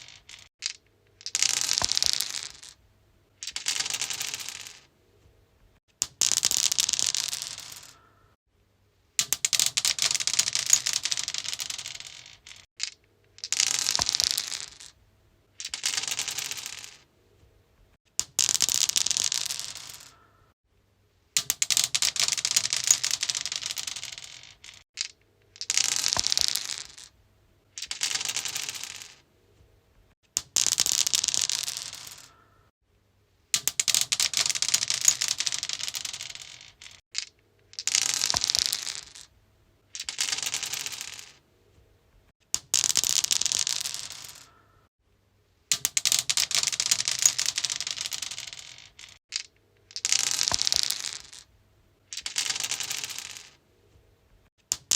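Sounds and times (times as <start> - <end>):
dice clattering on stone: 0.0 - 2.8, 3.4 - 4.9, 6.0 - 8.1, 9.2 - 17.1, 18.1 - 20.3, 21.4 - 27.2, 27.8 - 29.2, 30.4 - 32.4, 33.6 - 39.3, 39.9 - 41.4, 42.5 - 44.7, 45.7 - 51.5, 52.1 - 53.6, 54.6 - 54.9.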